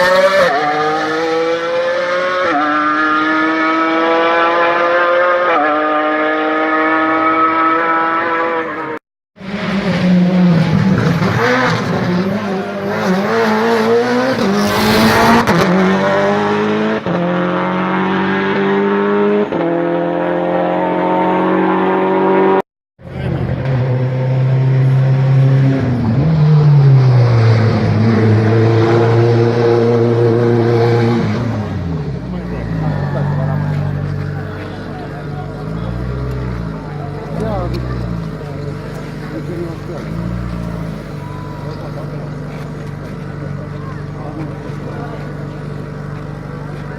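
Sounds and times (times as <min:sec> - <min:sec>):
race car engines at full throttle: 0:00.0 - 0:46.9.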